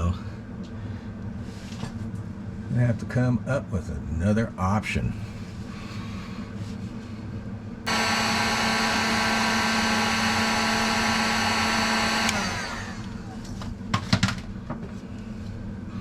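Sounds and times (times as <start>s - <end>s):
power tool motor whine: 7.9s - 13.4s.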